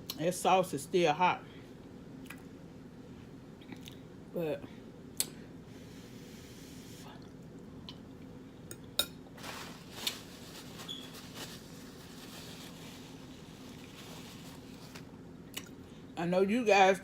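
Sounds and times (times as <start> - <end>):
low steady hum: 0.0 - 17.0
wet food squishing and scraping: 9.4 - 15.1.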